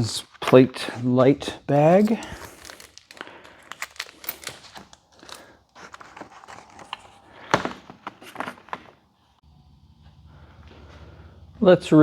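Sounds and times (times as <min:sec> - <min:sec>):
plastic bag crinkling: 0:01.9 - 0:07.3.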